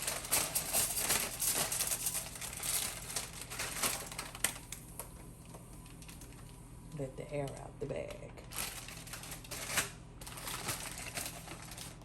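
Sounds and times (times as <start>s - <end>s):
plastic bag crinkling: 0.0s - 6.6s, 7.4s - 12.0s.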